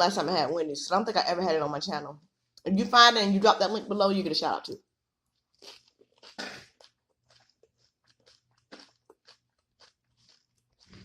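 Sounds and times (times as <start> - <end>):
crunchy chewing: 5.2 - 11.0.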